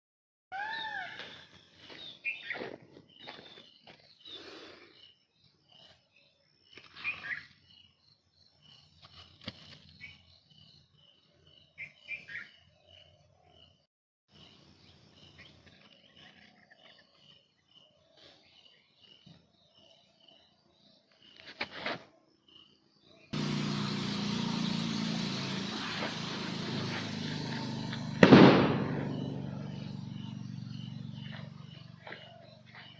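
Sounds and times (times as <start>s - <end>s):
bird calls gliding downward: 0.5s - 1.6s
birds chirping: 0.6s - 13.8s, 22.6s - 32.9s.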